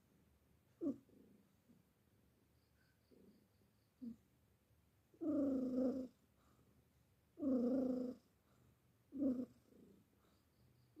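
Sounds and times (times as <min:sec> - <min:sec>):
cat snoring: 0:00.8 - 0:01.1, 0:05.2 - 0:06.2, 0:07.4 - 0:08.4, 0:09.1 - 0:10.0.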